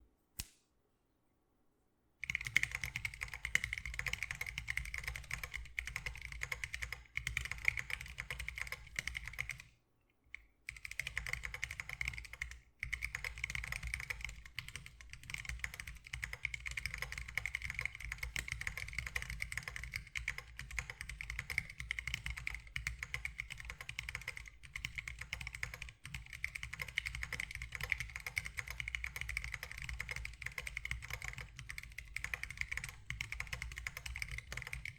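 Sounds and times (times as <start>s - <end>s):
single click: 0.4s - 0.7s
fast typing on mechanical keyboard: 2.2s - 9.7s, 10.7s - 34.9s.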